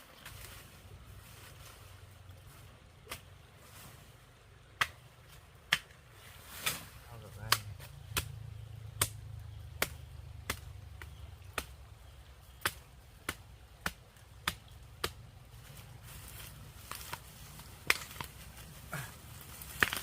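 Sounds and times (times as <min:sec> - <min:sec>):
hand tool chopping into ground: 0:09.8 - 0:11.7, 0:12.5 - 0:15.2, 0:17.8 - 0:18.4, 0:19.6 - 0:20.0.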